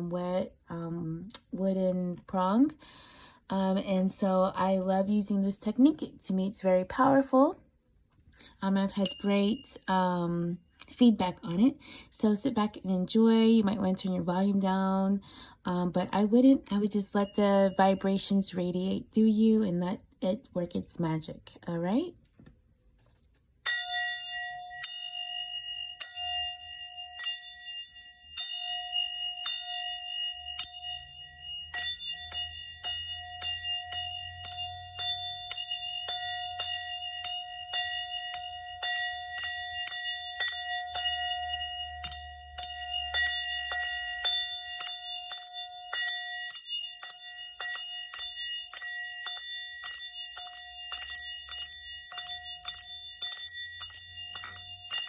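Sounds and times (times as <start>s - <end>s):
bright ringing bell strikes: 9.0s - 11.6s, 23.7s - 55.0s
sustained ringing tone: 23.7s - 55.0s.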